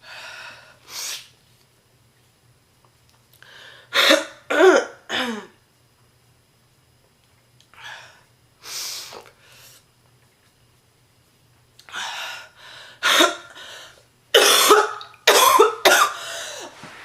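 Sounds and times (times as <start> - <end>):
woman breathing heavily: 0.0 - 0.9, 11.9 - 14.1, 16.1 - 17.0
woman coughing: 4.0 - 5.6, 14.4 - 16.7.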